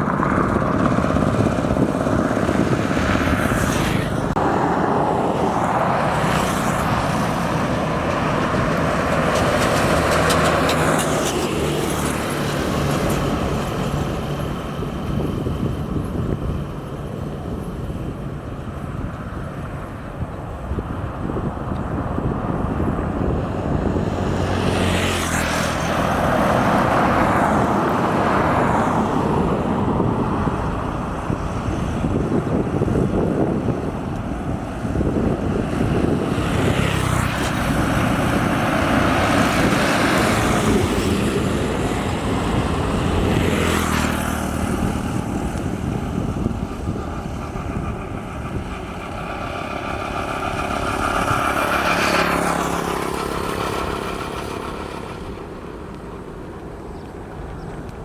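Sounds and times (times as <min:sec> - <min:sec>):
vehicles passing: 0:00.0 - 0:58.0
steady rumble: 0:44.7 - 0:58.0.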